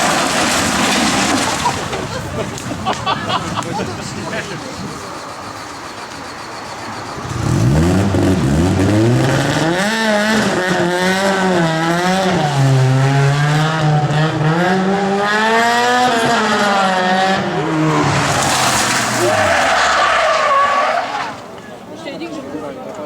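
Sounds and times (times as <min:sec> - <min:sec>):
rally car engine revving: 0:03.5 - 0:21.5.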